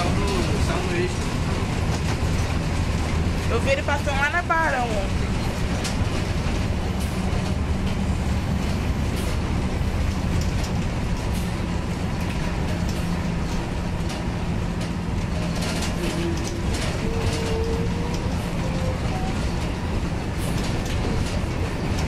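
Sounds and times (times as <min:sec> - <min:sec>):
bus engine and road noise: 0:00.0 - 0:22.0
rattles and clicks from bus body: 0:00.0 - 0:22.0.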